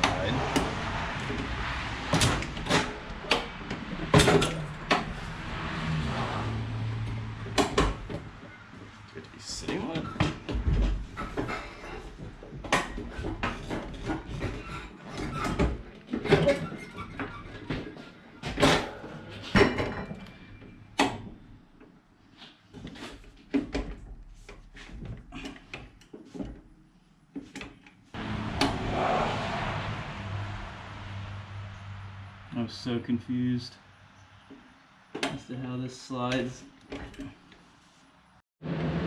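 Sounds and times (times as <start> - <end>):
metal seat rattling on rails: 2.1 - 5.2
steady rushing noise: 28.2 - 32.6.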